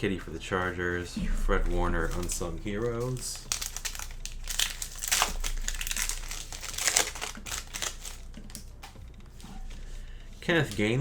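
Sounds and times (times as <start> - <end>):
foil wrapper crinkling and tearing: 3.0 - 9.7.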